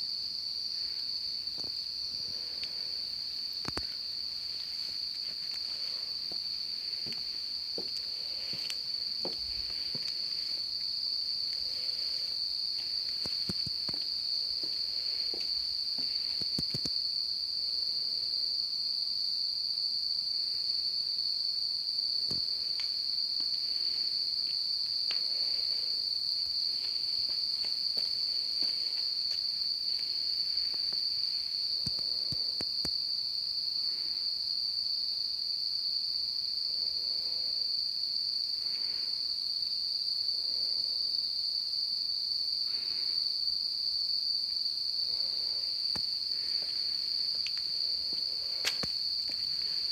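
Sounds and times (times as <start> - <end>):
insects droning: 0.0 - 49.9
faint clicks: 3.6 - 4.0, 31.8 - 33.0.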